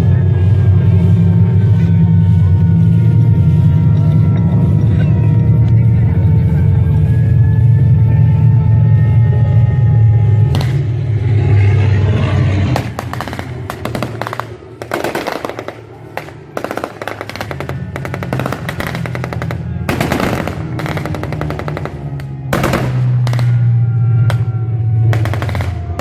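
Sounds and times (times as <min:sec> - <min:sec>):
steady low drone: 0:00.0 - 0:26.0
machine-gun fire: 0:12.8 - 0:23.6.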